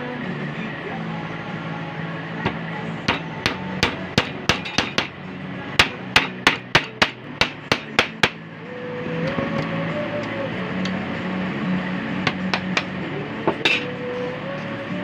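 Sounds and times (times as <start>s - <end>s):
hammer striking wood: 2.5s - 5.2s, 5.8s - 8.4s, 12.3s - 13.9s.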